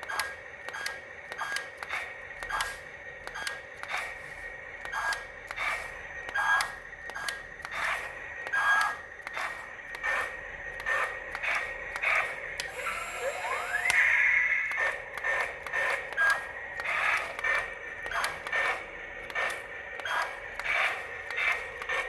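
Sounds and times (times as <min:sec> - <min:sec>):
faint steady high tone: 0:12.7 - 0:14.8
rising whine: 0:12.7 - 0:15.1.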